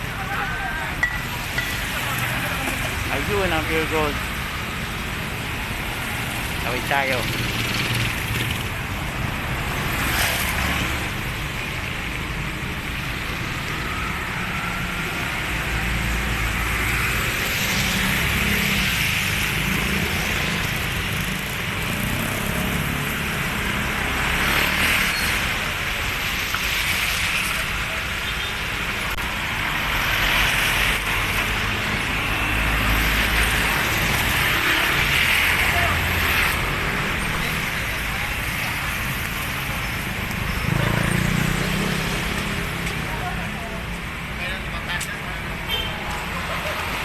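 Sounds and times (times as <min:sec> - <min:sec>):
tyres passing on wet road: 0:00.0 - 0:47.0
car engines running: 0:00.1 - 0:11.4.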